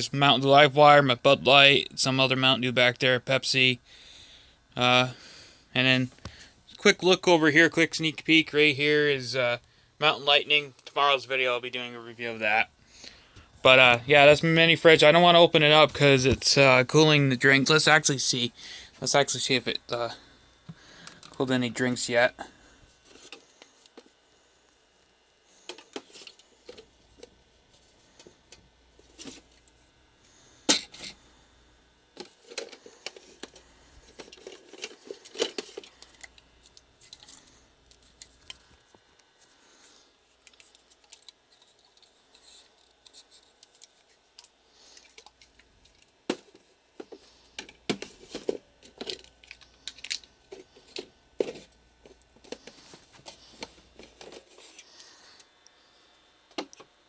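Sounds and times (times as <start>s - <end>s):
clicks taps and rustles: 20.6s - 21.5s.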